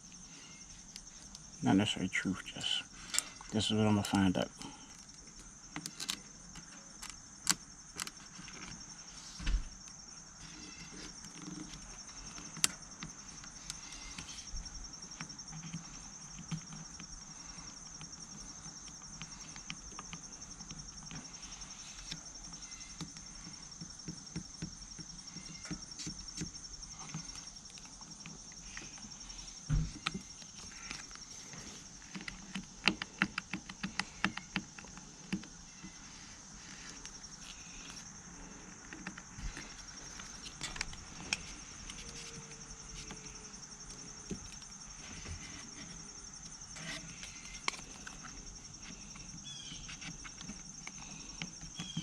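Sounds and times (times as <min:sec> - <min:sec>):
insect trill: 0:00.0 - 0:52.0.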